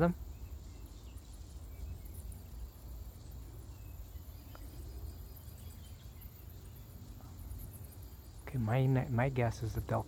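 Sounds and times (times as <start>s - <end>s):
bats squeaking and chittering: 0.0s - 10.0s.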